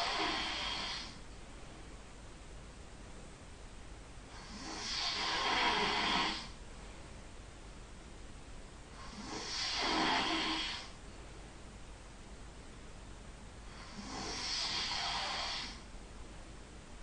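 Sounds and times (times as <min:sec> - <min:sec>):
person snoring: 0:00.0 - 0:01.2, 0:04.3 - 0:06.6, 0:09.0 - 0:11.0, 0:13.7 - 0:15.8.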